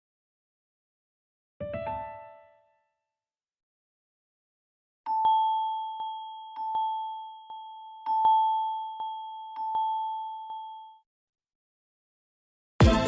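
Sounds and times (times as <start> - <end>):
bell-like ringtone chime: 5.1 - 11.0.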